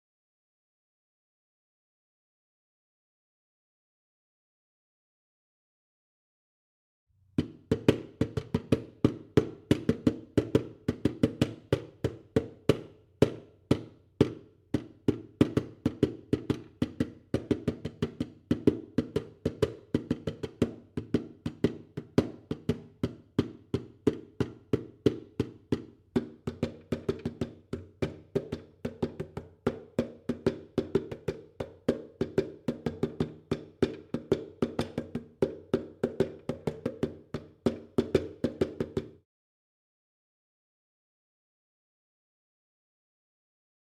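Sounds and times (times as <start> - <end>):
bongo drums played by hand: 7.4 - 39.2.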